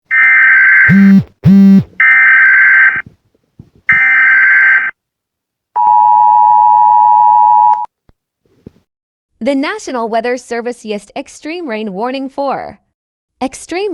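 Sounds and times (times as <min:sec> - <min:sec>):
short buzzes: 0:00.9 - 0:02.0
two-tone attention signal: 0:00.9 - 0:02.2.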